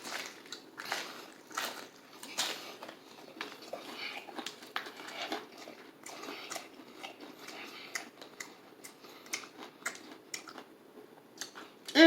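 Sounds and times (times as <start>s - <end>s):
person chewing crispy fried chicken: 0.0s - 10.8s.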